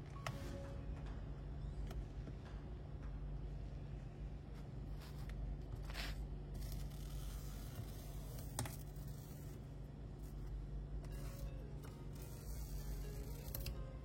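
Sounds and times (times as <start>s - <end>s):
rubber strip scraping and tearing: 5.0s - 9.6s.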